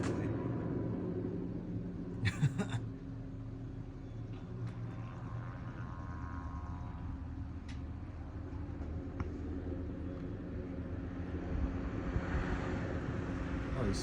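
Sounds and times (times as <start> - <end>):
distant helicopter drone: 0.0 - 14.0.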